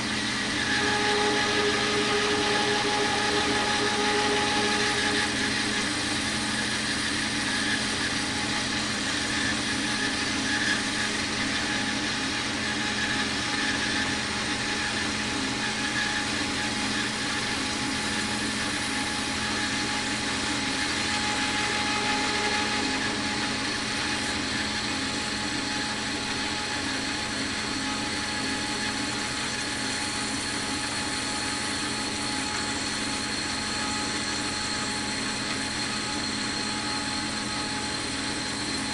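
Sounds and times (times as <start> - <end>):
bandsaw motor humming: 0.0 - 28.8
bandsaw blade cutting metal: 0.6 - 6.8.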